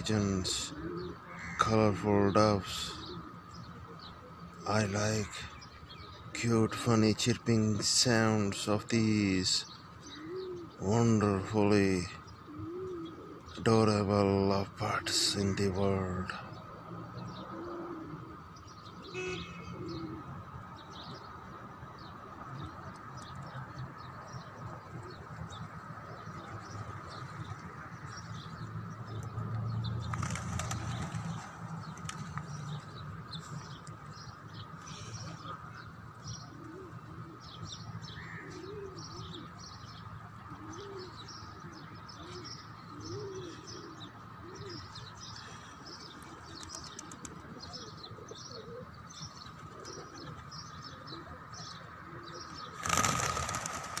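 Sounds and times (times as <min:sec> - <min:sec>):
pigeons cooing: 0:00.0 - 0:06.9, 0:09.2 - 0:54.0
birds chirping: 0:00.0 - 0:54.0
wings fluttering: 0:30.0 - 0:32.8, 0:52.8 - 0:54.0.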